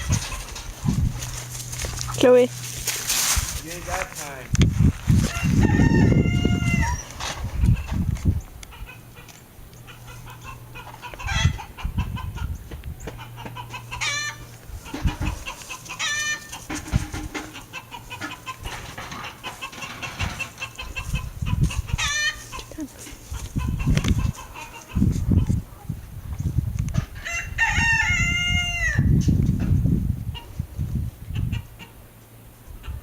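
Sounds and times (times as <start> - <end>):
chickens clucking: 0.0 - 1.7, 4.8 - 33.0
chicken squawking: 5.3 - 7.9, 8.7 - 12.6, 13.2 - 16.7, 17.5 - 25.5.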